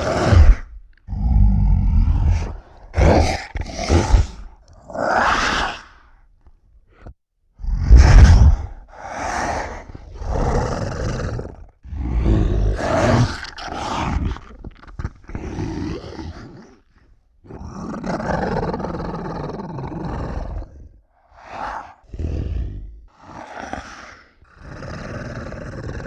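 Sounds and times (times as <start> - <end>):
monster roars and growls: 0.0 - 6.1, 7.6 - 16.6, 17.6 - 26.0.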